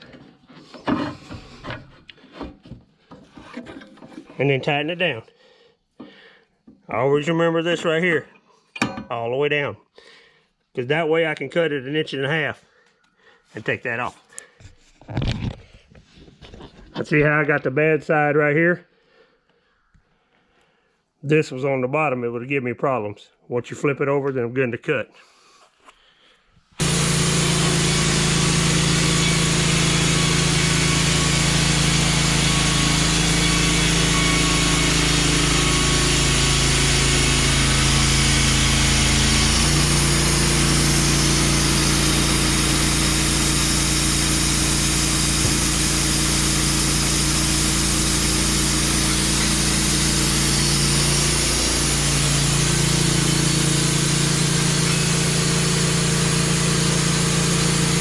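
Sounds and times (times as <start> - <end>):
band blade cutting logs: 26.8 - 58.0
bandsaw mill engine running: 26.8 - 58.0.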